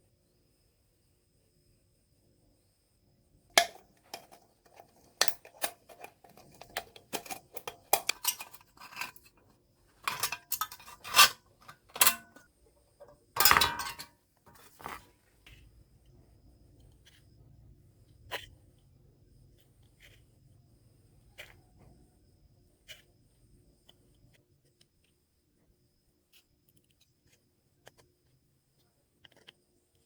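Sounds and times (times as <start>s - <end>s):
rustle or scrape: 13.4s - 15.1s.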